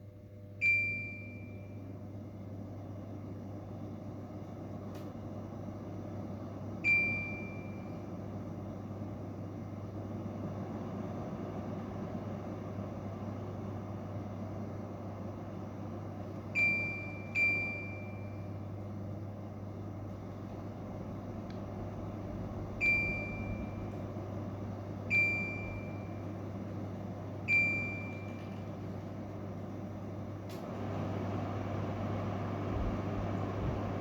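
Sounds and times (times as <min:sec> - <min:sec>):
fan hum and air noise: 0:00.0 - 0:34.0
fan control beeps: 0:00.6 - 0:02.2, 0:06.8 - 0:08.2, 0:16.2 - 0:19.1, 0:22.5 - 0:30.9.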